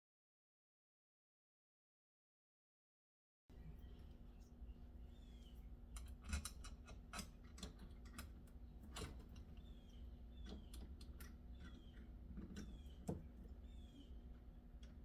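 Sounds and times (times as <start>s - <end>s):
low steady hum: 3.5s - 15.0s.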